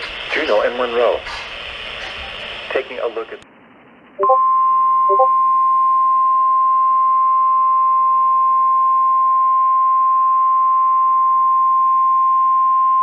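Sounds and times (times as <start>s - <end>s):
faint radio hiss: 0.0s - 3.5s
steady high alarm tone: 4.2s - 4.4s, 5.1s - 5.4s.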